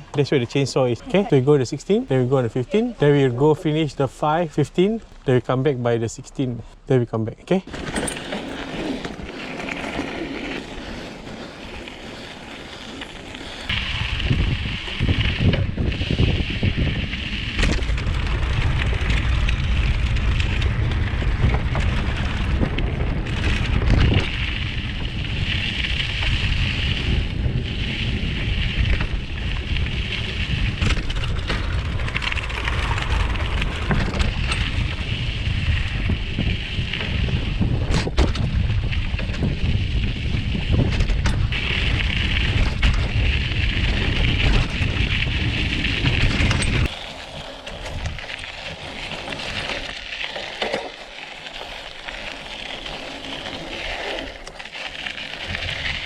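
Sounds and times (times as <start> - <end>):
bike tyre noise: 7.6 - 56.0
bike rattling over bumps: 7.7 - 56.0
wind buffeting microphone: 13.4 - 47.0.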